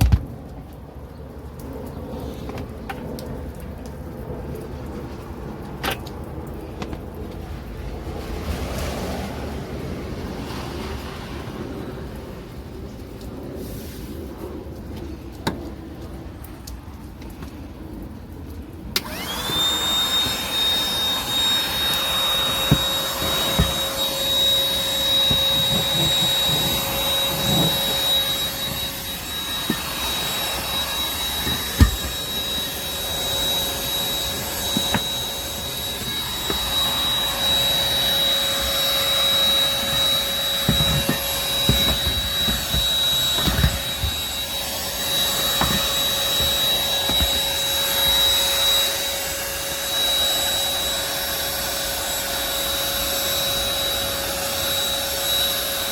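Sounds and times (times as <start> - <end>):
handheld vacuum cleaner whine: 19.0 - 55.9.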